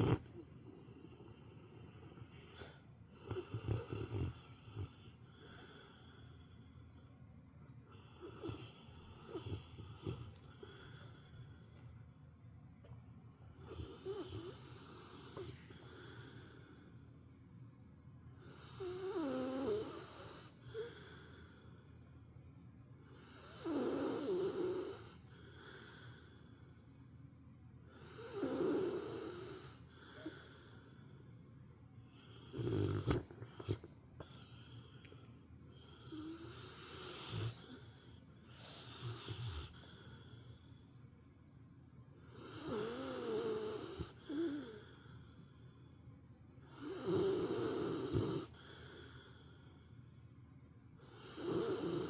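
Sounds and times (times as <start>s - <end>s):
dog snoring: 0.0s - 6.8s, 7.9s - 11.7s, 13.5s - 16.9s, 18.4s - 21.9s, 23.0s - 26.7s, 27.8s - 31.2s, 32.1s - 40.8s, 42.2s - 45.4s, 46.6s - 49.8s, 51.0s - 52.0s
dog breathing: 0.0s - 7.0s, 32.1s - 40.6s.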